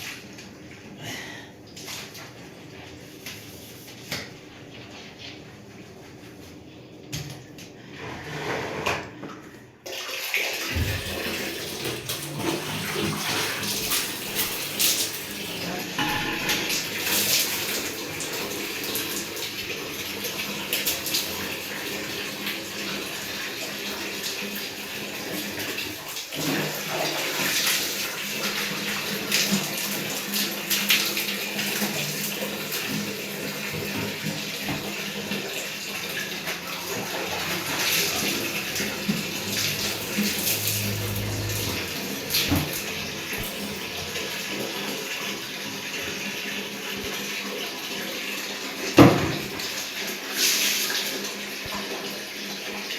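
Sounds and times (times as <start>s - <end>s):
water running and splashing: 9.8s - 52.9s.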